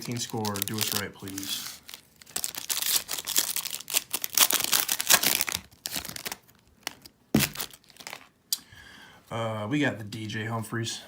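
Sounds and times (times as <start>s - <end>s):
cards rustling: 0.0s - 8.3s
plastic wrapper crinkling and tearing: 0.0s - 8.4s.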